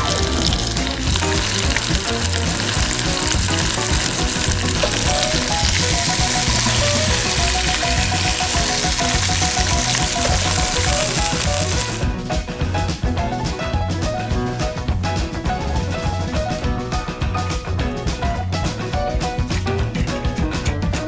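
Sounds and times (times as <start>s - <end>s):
food sizzling in a pan: 0.0s - 12.0s.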